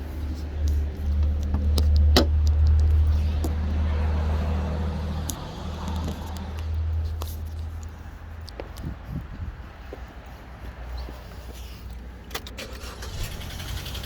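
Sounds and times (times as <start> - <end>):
car engine idling: 0.0 - 8.6, 12.1 - 14.0
engine ticks and knocks: 0.6 - 4.1.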